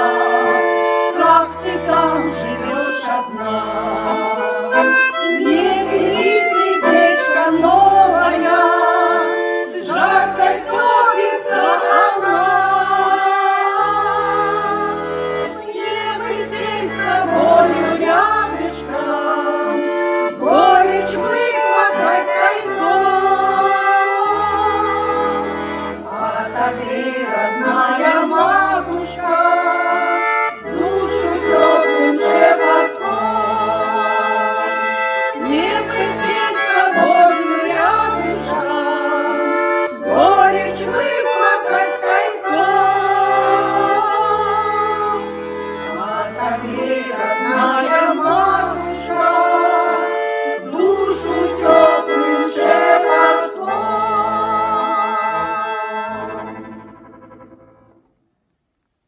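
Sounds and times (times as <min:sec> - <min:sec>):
group singing: 0:00.0 - 0:56.8
accordion folk music: 0:00.0 - 0:58.2.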